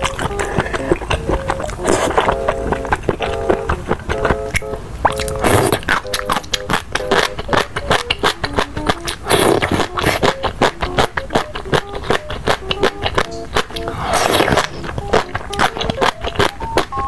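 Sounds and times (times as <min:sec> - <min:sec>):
background music: 0:00.0 - 0:17.0
slurping: 0:00.0 - 0:17.0
wet chewing: 0:00.0 - 0:17.0.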